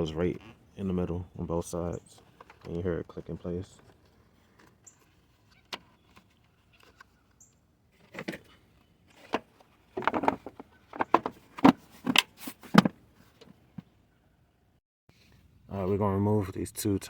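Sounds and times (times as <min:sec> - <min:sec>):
plastic knocks and rattles: 0:09.2 - 0:13.9.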